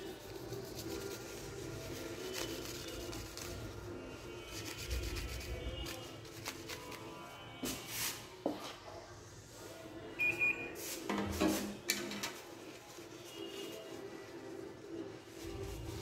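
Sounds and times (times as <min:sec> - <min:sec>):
tissue rubbing on circuit board: 0:00.0 - 0:07.2, 0:12.6 - 0:16.0.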